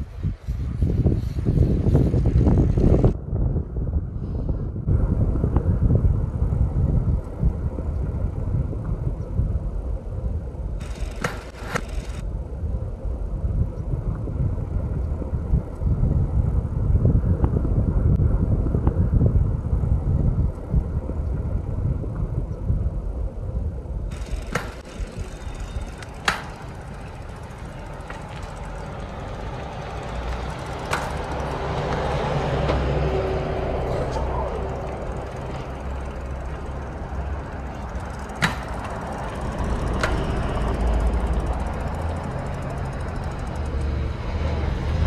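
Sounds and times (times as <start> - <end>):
bicycle tyres rolling: 0.0 - 45.0
wind on microphone: 0.0 - 45.0
sharp clicks: 10.8 - 12.2.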